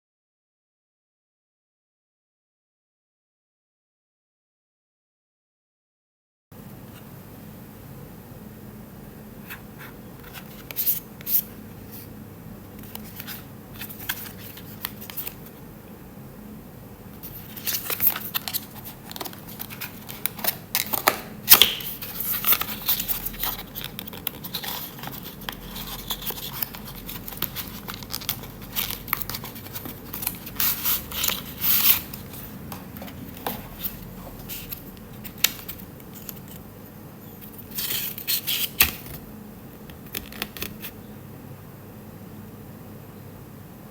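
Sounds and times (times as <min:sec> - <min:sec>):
packaging crinkling and tearing: 0:17.3 - 0:32.4
packaging clicks and taps: 0:17.6 - 0:36.6.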